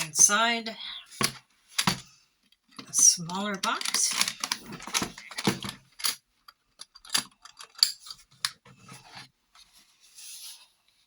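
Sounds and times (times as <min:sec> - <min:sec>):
latches clicking: 0:03.6 - 0:08.6
cases knocking together: 0:03.8 - 0:06.2.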